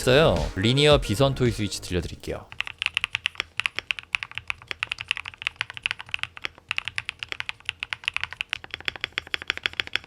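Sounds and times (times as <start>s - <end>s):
mechanical keyboard typing: 2.5s - 10.0s.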